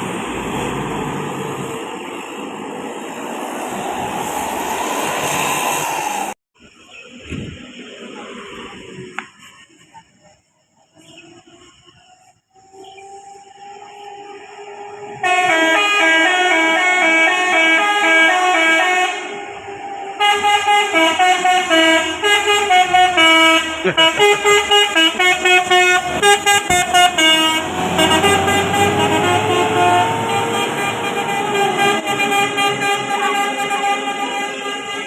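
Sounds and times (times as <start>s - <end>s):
musical bus horn melody: 11.7s - 35.0s.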